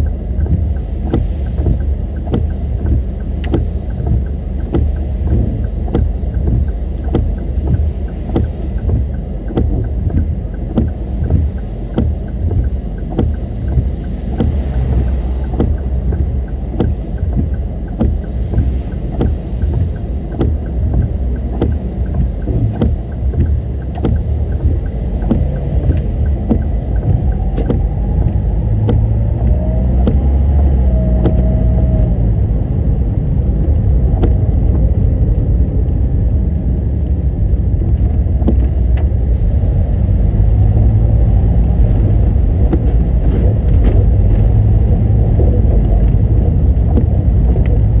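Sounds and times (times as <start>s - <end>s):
road and wind rumble: 0.0s - 48.0s
wavering engine tone: 20.0s - 33.4s.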